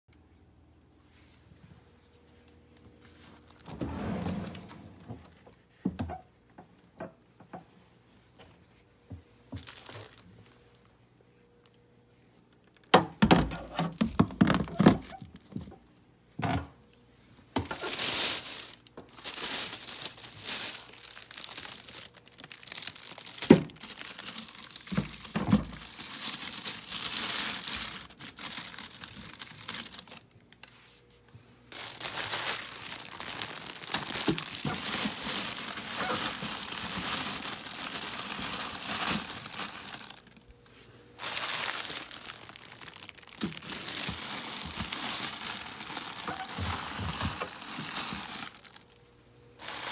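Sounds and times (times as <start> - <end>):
plastic crinkling and rustling: 3.0 - 5.8, 9.5 - 10.9, 12.5 - 15.8, 17.6 - 49.0, 49.6 - 49.9.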